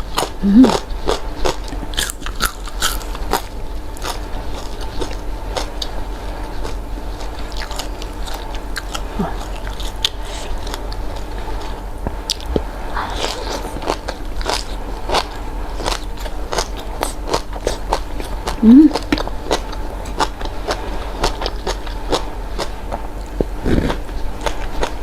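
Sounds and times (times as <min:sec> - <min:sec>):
person chewing food: 0:00.0 - 0:25.0
crisp food crunches: 0:00.1 - 0:12.5.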